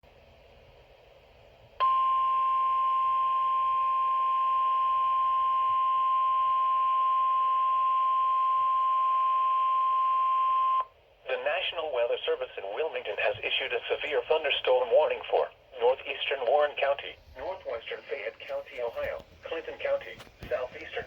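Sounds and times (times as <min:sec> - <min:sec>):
steady alarm beep: 0:01.8 - 0:10.9
faint radio hiss: 0:10.8 - 0:21.0.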